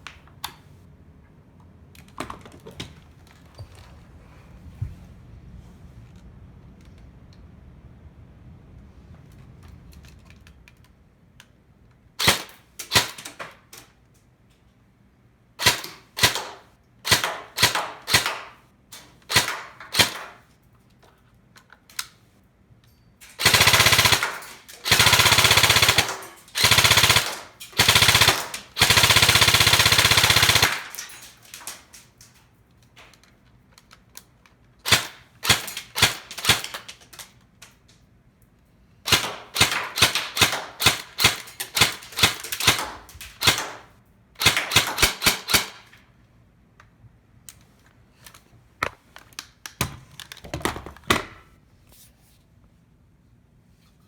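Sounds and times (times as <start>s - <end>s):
airsoft gun firing: 12.2s - 13.5s, 15.6s - 18.6s, 19.3s - 20.4s, 23.4s - 31.9s, 34.8s - 36.9s, 39.1s - 45.9s.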